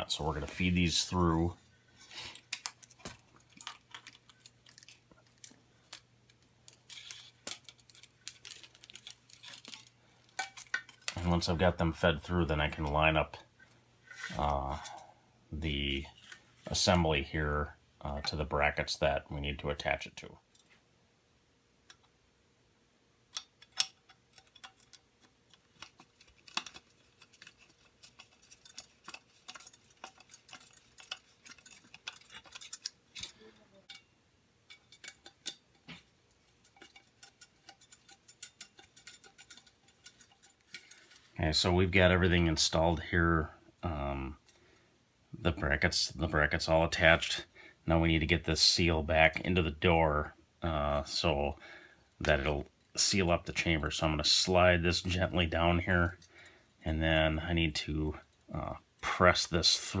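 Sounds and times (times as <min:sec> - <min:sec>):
metal tubes clicking and scraping: 0:00.0 - 0:17.2, 0:23.3 - 0:41.7
light metal clicks and taps: 0:34.7 - 0:41.2.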